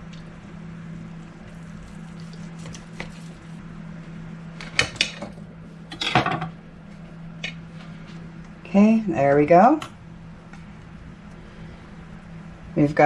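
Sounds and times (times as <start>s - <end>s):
low hum: 0.0s - 4.6s.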